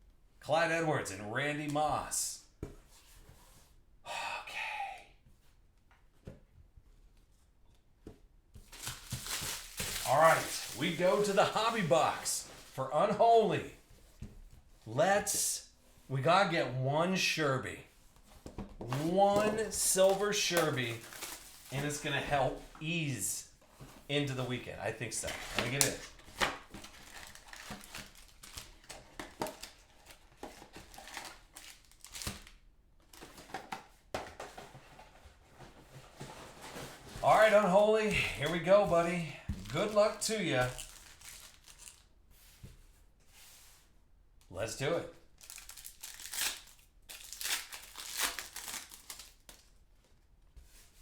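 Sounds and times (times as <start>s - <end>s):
wrapping crinkling: 8.6s - 12.8s, 18.9s - 22.6s, 25.2s - 33.4s, 36.3s - 42.2s, 45.3s - 49.8s.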